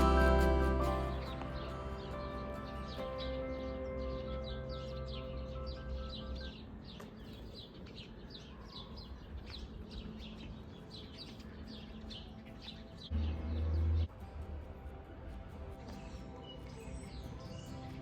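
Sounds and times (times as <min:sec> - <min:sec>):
loud low tone: 0:00.0 - 0:06.1
soft background music: 0:00.0 - 0:07.1, 0:09.9 - 0:18.0
small birds chirping: 0:00.0 - 0:14.2, 0:15.6 - 0:18.0.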